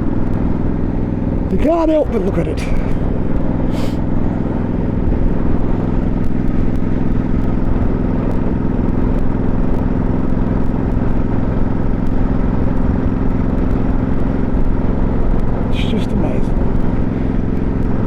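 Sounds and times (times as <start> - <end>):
motorcycle engine cruising: 0.0 - 18.0.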